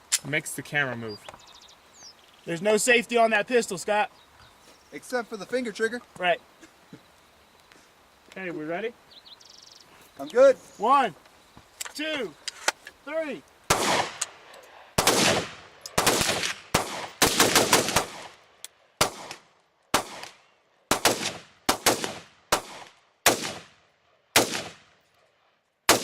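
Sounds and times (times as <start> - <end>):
rifle gunfire: 13.7 - 14.4, 15.0 - 18.4, 19.0 - 23.8, 24.4 - 24.9.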